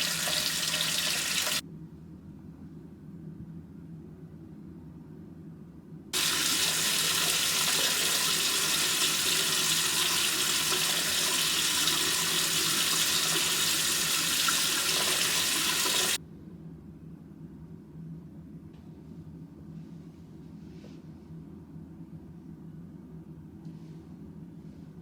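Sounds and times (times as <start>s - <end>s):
sink tap running: 0.0s - 1.6s, 6.2s - 16.2s.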